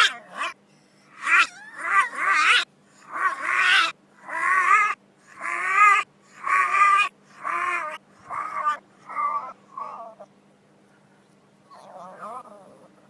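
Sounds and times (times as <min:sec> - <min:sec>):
faint steady hum: 0:00.0 - 0:13.0.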